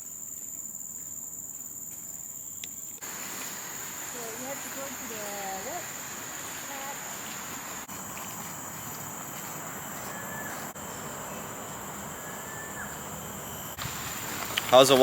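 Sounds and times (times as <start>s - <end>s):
insects droning: 0.0s - 15.0s
faint bird whistles: 10.1s - 10.6s, 12.2s - 13.0s.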